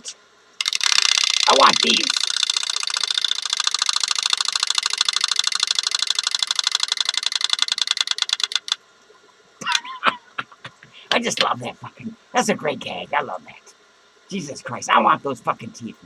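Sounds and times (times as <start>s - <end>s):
chattering teeth toy clattering: 0.6s - 8.8s.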